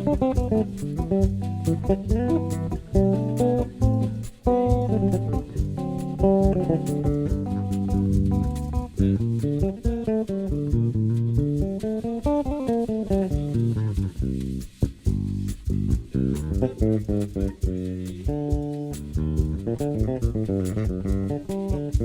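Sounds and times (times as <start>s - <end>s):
bass guitar melody: 0.0s - 22.0s.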